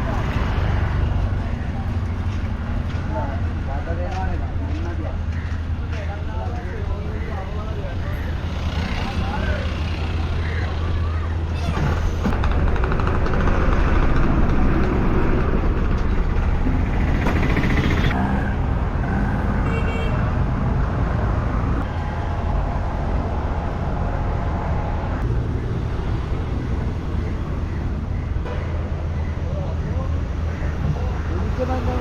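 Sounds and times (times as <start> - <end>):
traffic noise: 0.0 - 32.0
engine running: 7.6 - 19.3.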